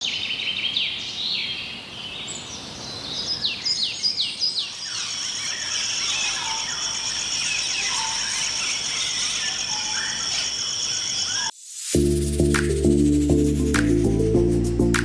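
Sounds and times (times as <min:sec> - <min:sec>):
cage birds chirping: 0:00.0 - 0:11.5.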